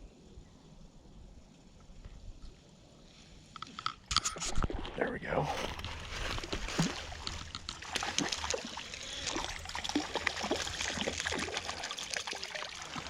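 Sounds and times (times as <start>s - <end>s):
trickling water: 5.8s - 13.0s
fish splashing in water: 6.4s - 13.0s.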